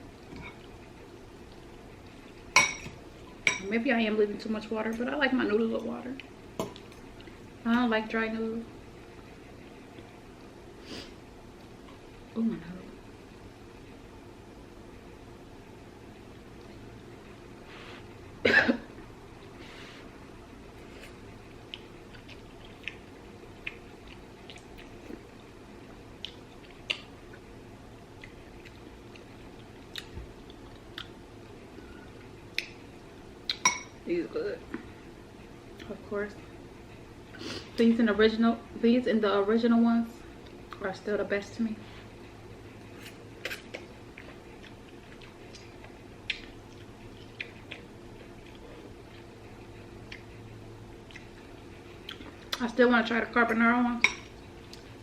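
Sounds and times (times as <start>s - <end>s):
steady low hum: 0.0s - 55.0s
person chewing: 20.8s - 27.5s, 28.2s - 31.2s, 42.7s - 52.6s, 54.3s - 55.0s
wet mouth clicks chewing: 26.2s - 27.4s, 43.4s - 50.4s, 51.0s - 52.6s.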